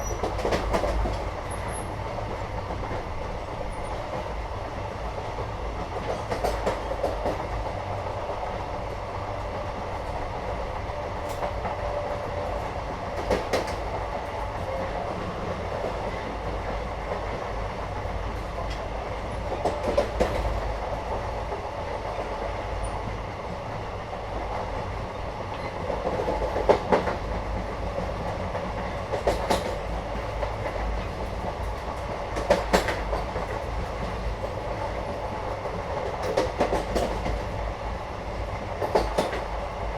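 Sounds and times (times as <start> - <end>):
wheels clacking over rail joints: 0.0 - 1.9, 28.8 - 34.9, 38.8 - 39.5
train carriage rumble: 0.0 - 39.9.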